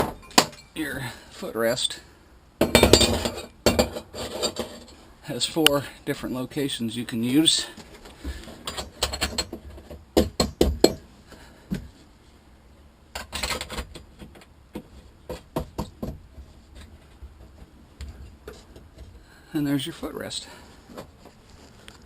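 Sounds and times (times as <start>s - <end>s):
parts knocking and clinking: 0.0s - 0.8s, 2.6s - 5.0s, 8.6s - 11.1s.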